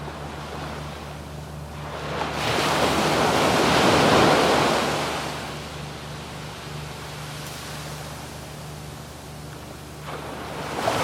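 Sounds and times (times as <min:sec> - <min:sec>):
low steady hum: 0:00.0 - 0:11.0
surf washing on sand: 0:01.8 - 0:05.7, 0:10.0 - 0:11.0.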